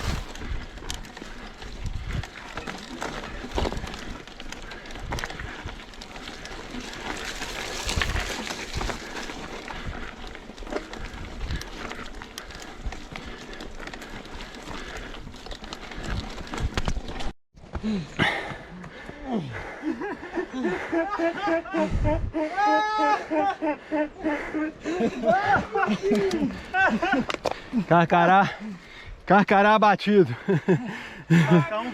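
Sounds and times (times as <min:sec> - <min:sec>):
bike rattles and knocks: 0:00.0 - 0:17.3, 0:25.0 - 0:28.6
bike tyre noise: 0:00.0 - 0:29.2
wind rumble on microphone: 0:21.8 - 0:22.4.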